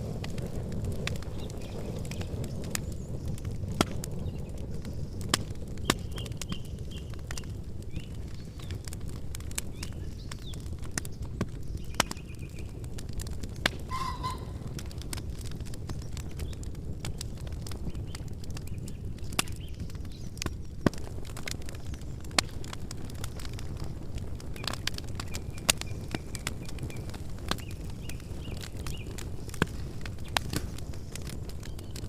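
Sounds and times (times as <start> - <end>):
campfire crackling and popping: 0.0 - 32.0
faint bird chirps: 13.9 - 14.8.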